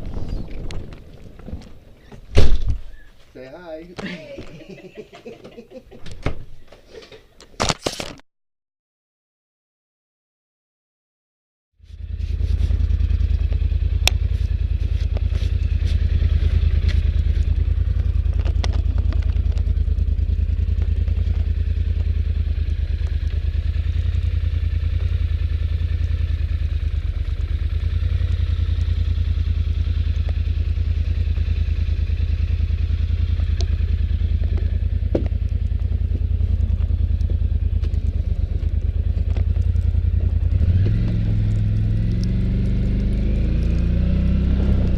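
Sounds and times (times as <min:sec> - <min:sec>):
atv engine running: 0:11.9 - 0:44.9.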